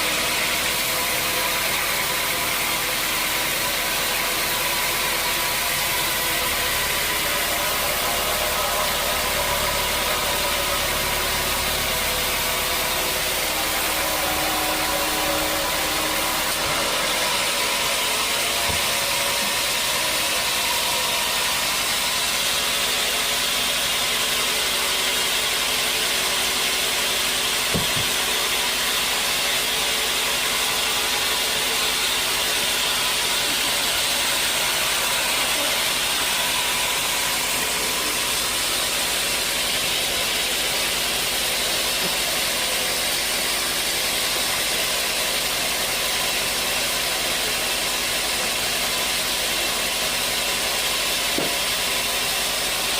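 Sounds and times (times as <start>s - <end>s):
machine hum: 0.0s - 44.9s
saw cutting log: 0.0s - 52.9s
knock: 27.7s - 28.2s, 51.4s - 51.6s.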